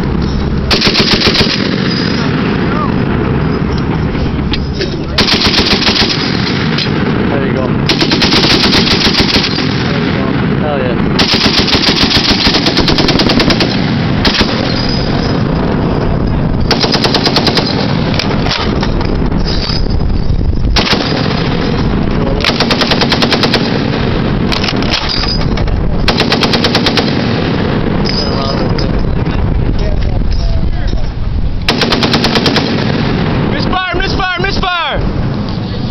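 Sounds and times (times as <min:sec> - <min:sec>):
heavy machine gun bursts: 0:00.7 - 0:02.4, 0:05.2 - 0:06.9, 0:07.8 - 0:10.0, 0:11.2 - 0:15.4, 0:16.7 - 0:18.8, 0:20.8 - 0:25.4, 0:26.0 - 0:27.5, 0:31.7 - 0:33.2.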